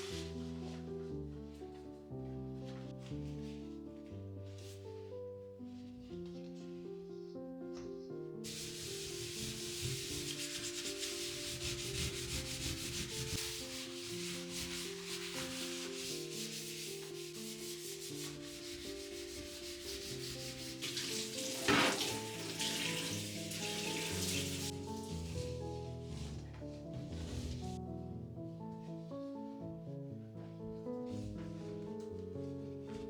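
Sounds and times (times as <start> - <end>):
soft background music: 0.0 - 33.0
scrubbing a hard surface by hand: 8.5 - 27.8.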